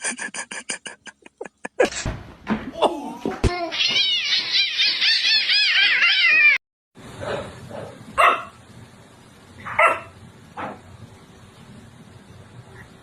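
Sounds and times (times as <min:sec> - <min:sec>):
cat wavering cries: 0:03.7 - 0:06.6.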